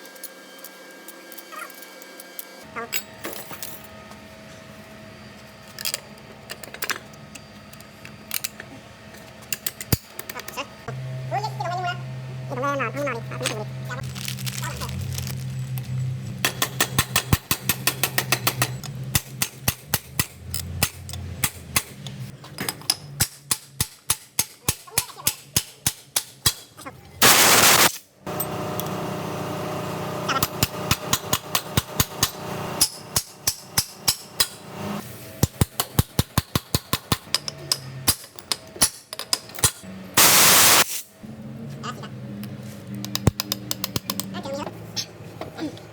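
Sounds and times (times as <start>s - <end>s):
air hiss bursts: 27.2s - 27.9s, 40.2s - 41.1s.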